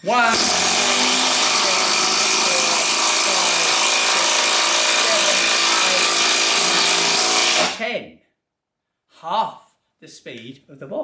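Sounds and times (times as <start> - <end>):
impact driver hammering screw into wood: 0.1 - 7.8.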